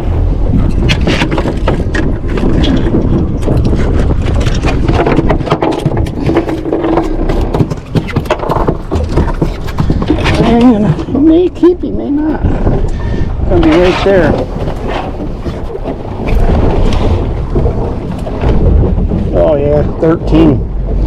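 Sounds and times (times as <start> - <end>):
wind rumble on microphone: 0.0 - 21.0
knocking and scraping on wood: 0.7 - 11.3, 13.6 - 19.6.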